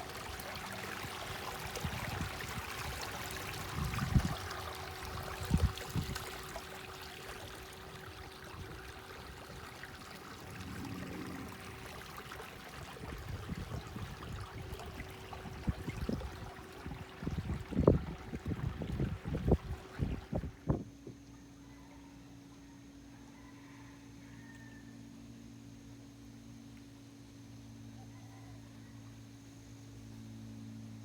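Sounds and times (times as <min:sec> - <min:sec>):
water rushing along hulls: 0:00.0 - 0:21.0.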